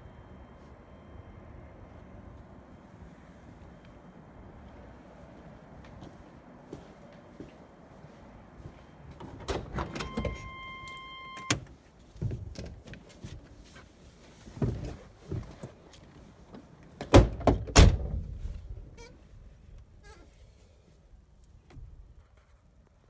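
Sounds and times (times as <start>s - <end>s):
electronic warning tone: 9.9s - 11.5s.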